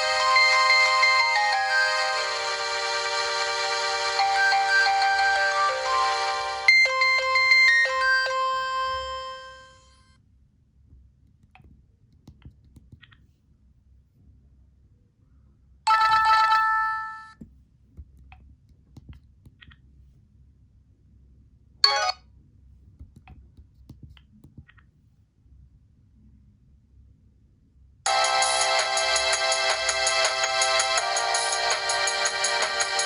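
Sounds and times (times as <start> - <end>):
bright electronic tone: 0.0 - 10.0, 21.8 - 22.2
chime melody: 0.0 - 10.0, 28.1 - 33.0
electronic phone ringtone: 0.0 - 10.0, 15.9 - 17.3, 21.8 - 22.2, 28.1 - 33.0.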